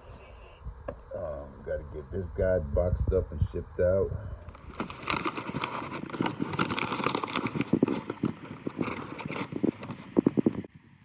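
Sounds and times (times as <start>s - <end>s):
packing material rustling: 4.4s - 10.7s.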